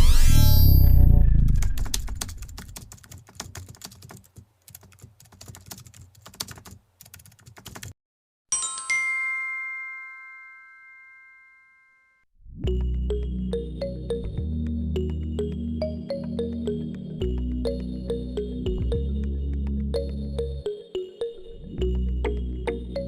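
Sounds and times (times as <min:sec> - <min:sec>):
keyboard typing clicks: 0:01.5 - 0:07.9
bell-like ding: 0:08.6 - 0:12.2.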